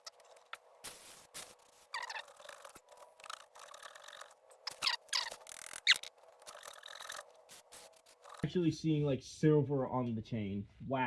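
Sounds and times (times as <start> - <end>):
chain scrubbing squeaky strokes: 1.9 - 7.3.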